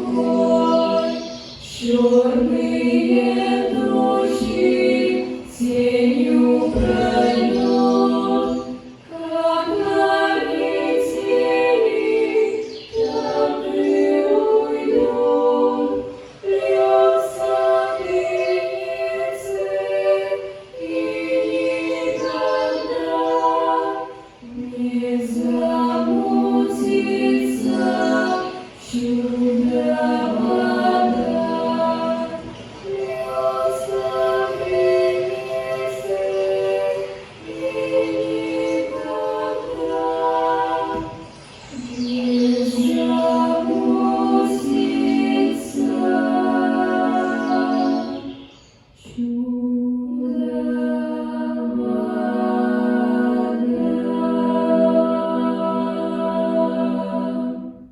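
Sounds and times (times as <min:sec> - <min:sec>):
children singing a cappella: 0:00.0 - 0:57.9.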